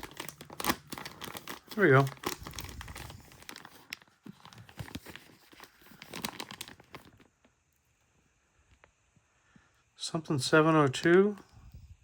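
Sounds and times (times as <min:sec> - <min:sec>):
plastic bag crinkling: 0:00.0 - 0:07.5.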